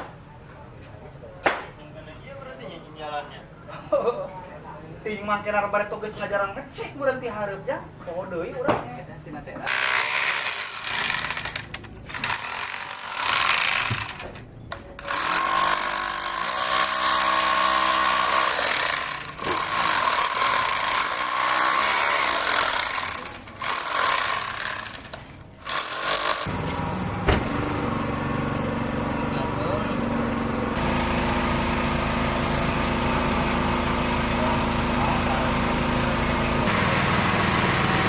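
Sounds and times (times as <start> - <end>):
power tool running in bursts: 9.7 - 14.2, 15.0 - 25.0, 25.6 - 38.0
low steady motor: 26.5 - 38.0.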